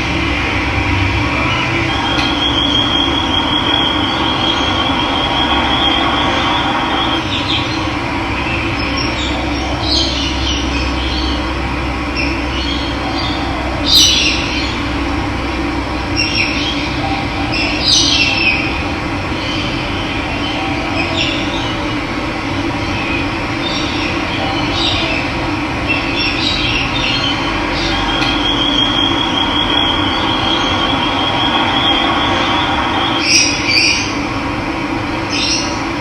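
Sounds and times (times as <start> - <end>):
birds calling: 0.0 - 15.3, 16.0 - 34.3.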